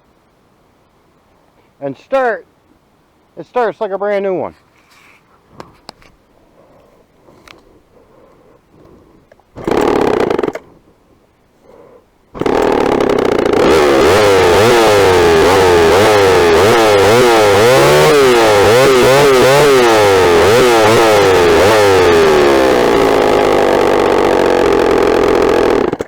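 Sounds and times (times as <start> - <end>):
chainsaw revving: 9.6 - 10.8, 12.4 - 26.0.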